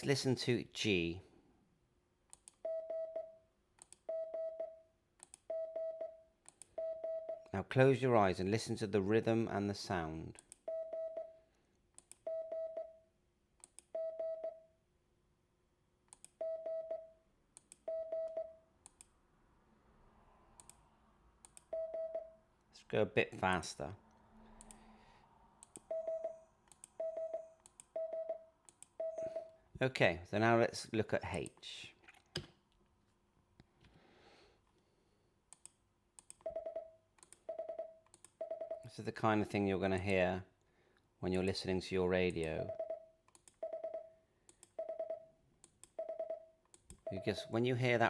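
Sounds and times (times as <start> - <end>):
morse code beeps: 2.6 - 3.4, 4.1 - 4.8, 5.5 - 6.2, 6.8 - 7.4, 10.7 - 11.4, 12.3 - 13.0, 14.0 - 14.6, 16.4 - 17.2, 17.9 - 18.6, 21.7 - 22.4, 25.9 - 26.4, 27.0 - 29.6, 36.5 - 38.8, 42.7 - 44.1, 44.8 - 45.3, 46.0 - 47.5
sharp clicks: 5.2 - 5.4, 12.0 - 12.2, 17.6 - 17.8, 24.6 - 24.8, 25.6 - 25.9, 26.7 - 27.0, 35.5 - 36.5, 37.2 - 37.4, 43.3 - 43.7.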